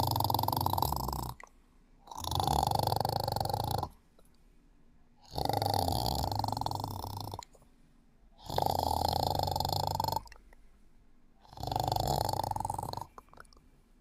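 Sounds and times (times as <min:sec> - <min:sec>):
person snoring: 0:00.0 - 0:01.4, 0:02.1 - 0:04.0, 0:05.2 - 0:07.5, 0:08.4 - 0:10.4, 0:11.4 - 0:13.5.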